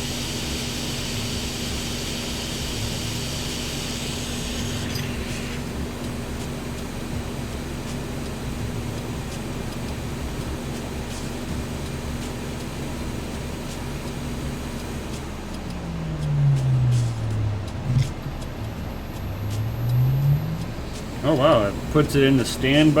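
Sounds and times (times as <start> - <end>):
fan blowing with rushing hiss: 0.0 - 23.0
low hum: 15.0 - 22.4.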